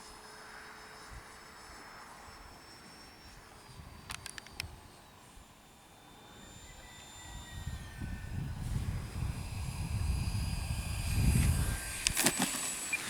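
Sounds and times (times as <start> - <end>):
electric ducted fan whine: 0.0 - 13.0
sharp clicks: 4.1 - 4.7.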